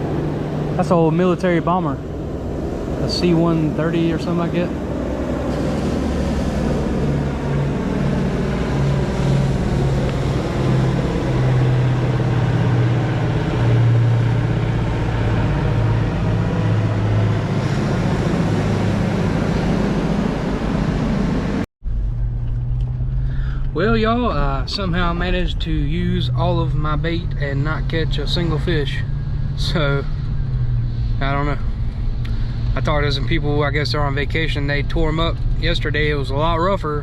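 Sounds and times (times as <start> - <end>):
propeller aircraft droning overhead: 0.0 - 22.3.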